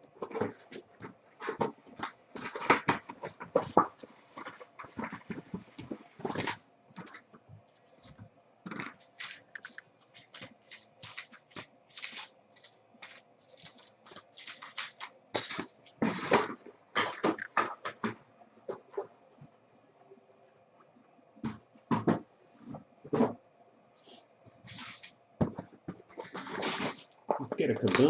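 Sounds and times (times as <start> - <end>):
faint steady hum: 0.0 - 28.0
packaging crinkling and tearing: 0.3 - 7.2, 7.8 - 17.7, 26.2 - 28.0.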